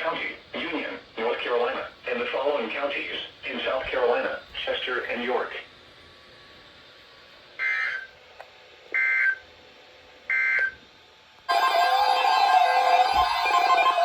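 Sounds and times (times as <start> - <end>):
music: 11.5 - 14.0.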